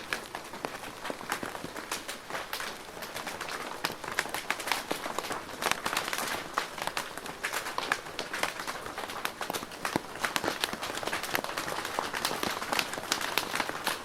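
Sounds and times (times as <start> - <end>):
rain on a plastic roof: 0.0 - 14.0.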